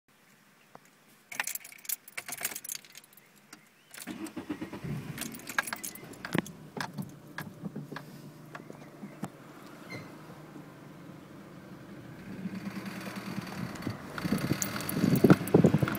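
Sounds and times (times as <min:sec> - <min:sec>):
car keys jangling: 0:01.3 - 0:03.3, 0:03.9 - 0:07.6, 0:13.7 - 0:15.9
car engine starting and idling: 0:04.0 - 0:15.9.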